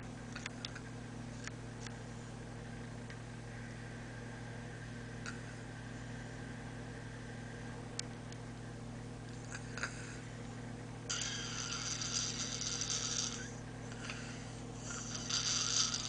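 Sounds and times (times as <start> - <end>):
low hum of motor or fan: 0.0 - 16.0
man snoring loudly: 11.1 - 16.0.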